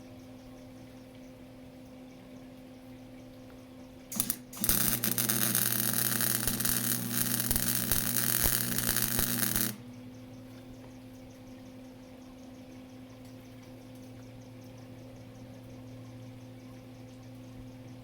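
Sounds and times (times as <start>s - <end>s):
low electrical hum: 0.0s - 18.0s
welding arc crackling sizzle: 4.1s - 9.8s.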